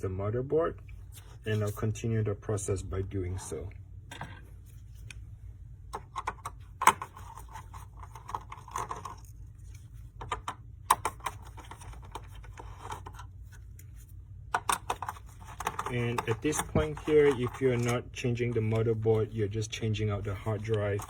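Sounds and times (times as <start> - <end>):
computer parts clicking and scraping: 14.6 - 19.2, 20.3 - 21.0.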